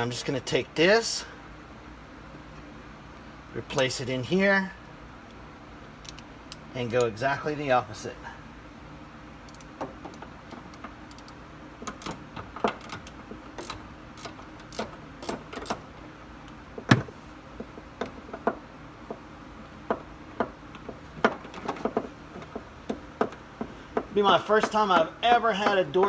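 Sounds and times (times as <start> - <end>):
metallic clicks of hardware: 6.0 - 7.1, 9.5 - 15.8.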